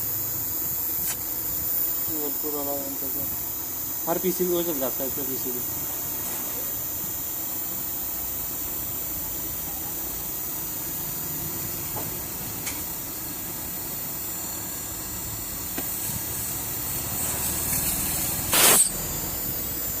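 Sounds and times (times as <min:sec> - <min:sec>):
air conditioner hissing: 0:00.0 - 0:20.0
loud hissing burst: 0:17.0 - 0:19.7.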